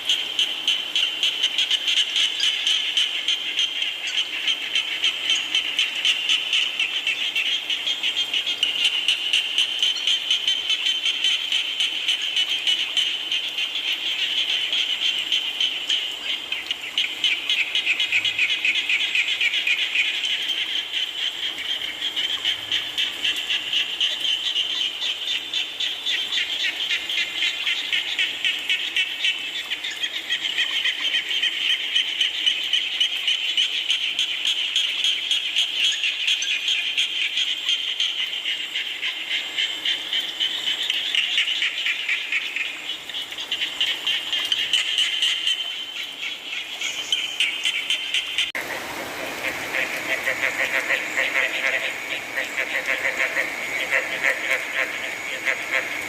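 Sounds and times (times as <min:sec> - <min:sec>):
frogs calling in trills: 0:00.0 - 0:56.0
rain falling: 0:42.9 - 0:56.0.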